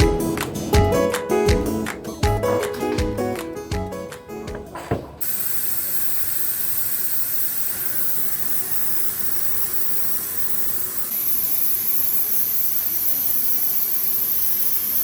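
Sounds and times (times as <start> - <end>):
welding torch flame hissing: 5.2 - 15.0.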